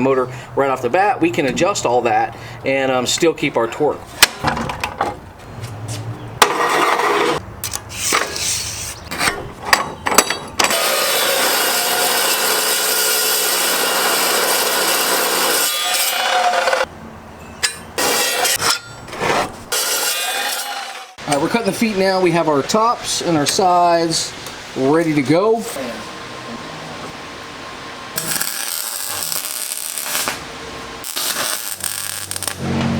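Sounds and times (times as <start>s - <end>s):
steel parts clanking: 9.1s - 10.9s, 17.3s - 21.5s
power tool cutting steel: 10.6s - 16.9s, 17.6s - 19.0s, 19.7s - 21.2s, 28.2s - 32.9s.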